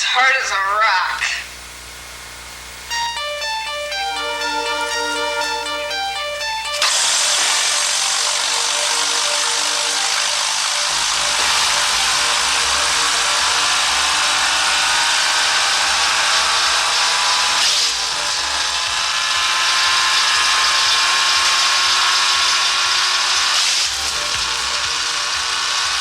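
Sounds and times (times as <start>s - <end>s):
woodchipper whirring and grinding: 6.7s - 26.0s.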